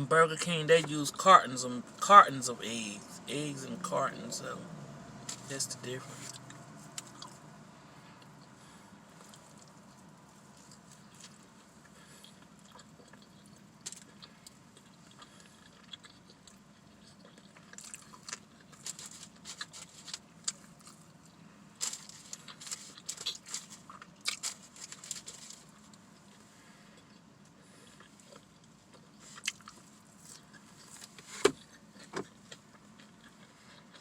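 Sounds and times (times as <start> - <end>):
faint traffic hum: 0.0 - 34.0
chewing and biting food: 6.1 - 7.5, 8.2 - 34.0.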